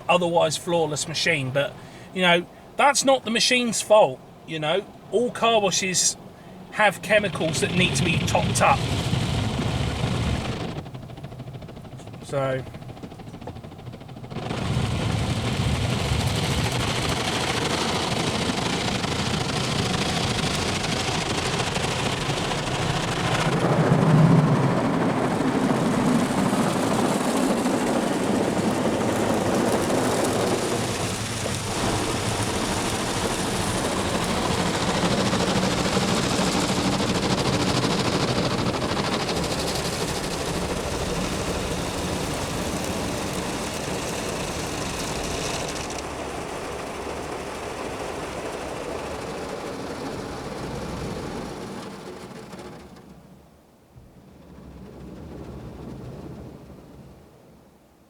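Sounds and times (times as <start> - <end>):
water and brushes drumming on car: 26.0 - 53.1.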